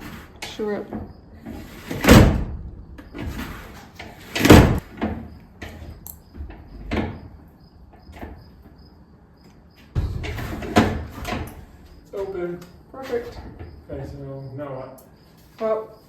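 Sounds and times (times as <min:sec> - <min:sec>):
attic hatch thumping shut: 0:04.4 - 0:05.2, 0:09.9 - 0:11.6.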